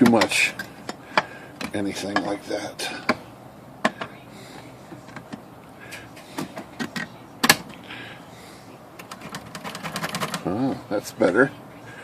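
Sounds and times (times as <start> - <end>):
typewriter metal parts clicking: 9.0 - 10.4.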